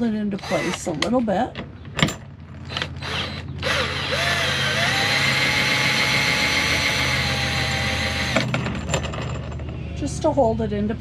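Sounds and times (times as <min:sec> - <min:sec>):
electric power tool motor: 0:00.4 - 0:01.0, 0:02.7 - 0:08.5.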